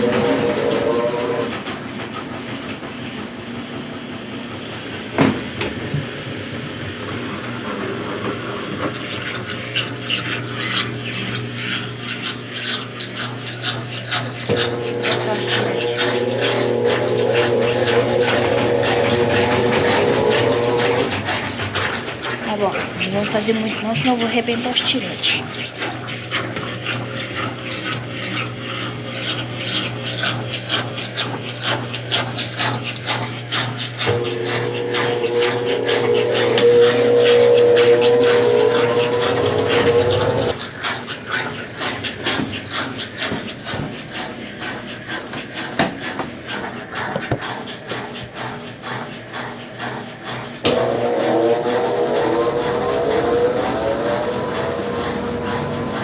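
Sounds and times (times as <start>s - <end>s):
washing machine motor hum: 0.0s - 56.0s
water and clothes swishing: 5.4s - 47.7s
higher steady hum: 14.5s - 25.4s, 34.1s - 40.6s.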